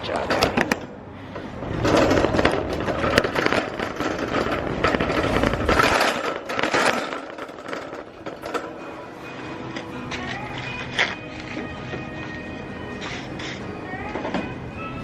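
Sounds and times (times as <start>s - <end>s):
shopping cart wheels rumbling: 0.0s - 15.0s
wire basket rattling: 1.6s - 9.2s.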